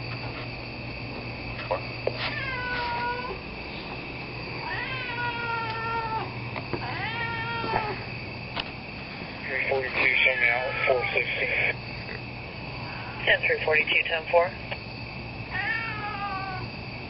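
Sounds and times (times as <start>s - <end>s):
steady low hum: 0.0s - 17.0s
cat meowing: 2.2s - 3.4s, 4.6s - 8.0s, 10.3s - 11.1s, 15.5s - 16.6s.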